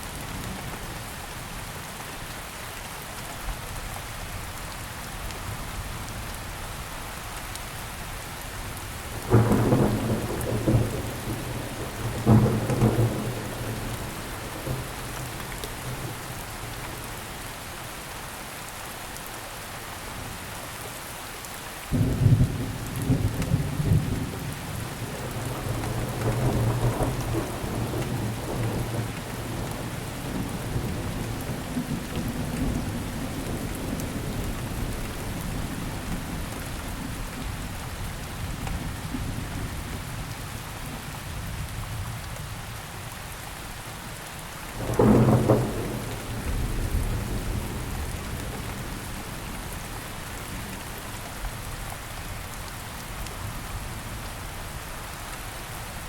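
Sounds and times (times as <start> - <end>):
steady rainfall: 0.0 - 56.0
thunder rumble: 9.2 - 16.1, 44.8 - 49.8
thunderclaps: 9.2 - 16.1, 44.8 - 49.8.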